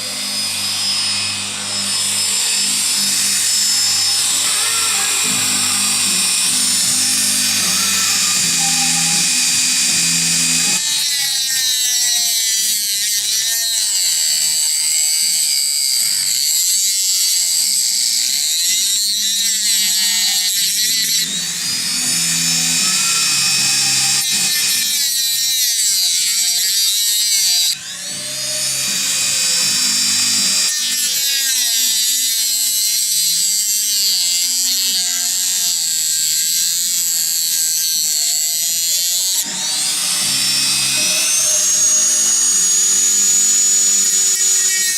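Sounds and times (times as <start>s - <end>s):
high-speed power tool whining: 0.0s - 44.9s.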